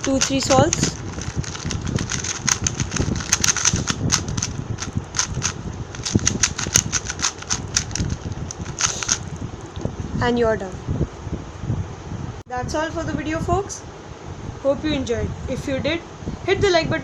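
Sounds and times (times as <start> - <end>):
puzzle cube plastic clicks: 0.0 - 9.3.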